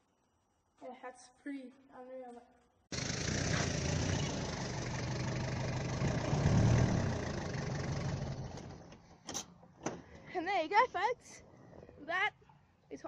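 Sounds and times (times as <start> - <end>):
engine running: 2.9 - 9.1.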